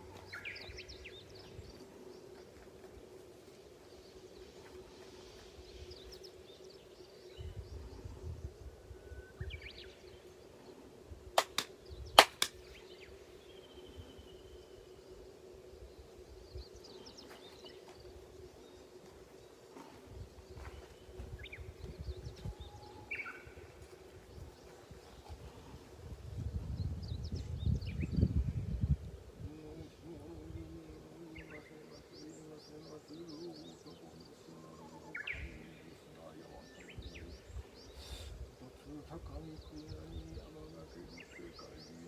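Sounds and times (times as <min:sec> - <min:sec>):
small birds chirping: 0:00.0 - 0:42.0
steady low hum: 0:00.0 - 0:42.0
sharp hand claps: 0:11.4 - 0:12.6.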